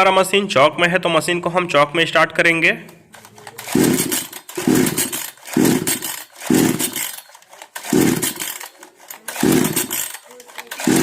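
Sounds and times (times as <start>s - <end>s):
chainsaw recoil starter pulls: 3.1s - 11.0s.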